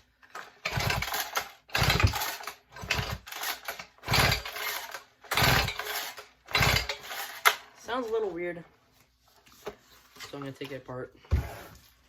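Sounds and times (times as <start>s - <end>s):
recoil starter whirring rattle: 0.3s - 7.6s.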